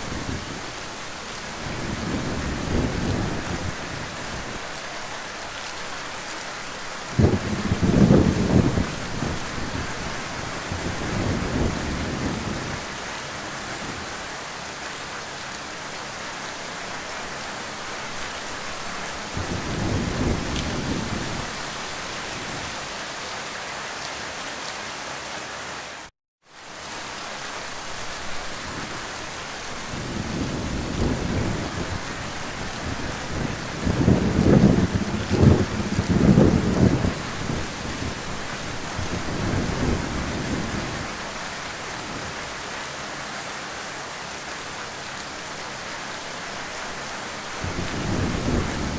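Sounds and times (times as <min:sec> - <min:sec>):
heavy rain falling: 0:00.0 - 0:48.9
thunder rolling: 0:01.6 - 0:04.5, 0:07.1 - 0:12.9, 0:19.3 - 0:22.7, 0:29.8 - 0:41.4, 0:47.6 - 0:48.9.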